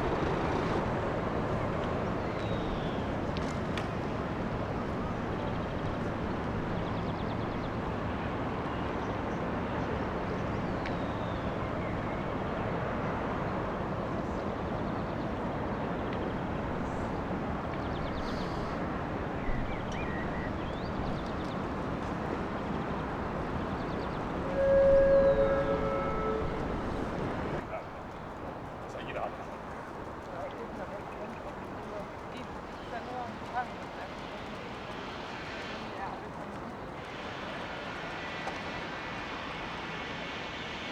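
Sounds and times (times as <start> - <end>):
ship engine rumble: 16.4 - 30.1
two-note ship horn: 24.3 - 27.6.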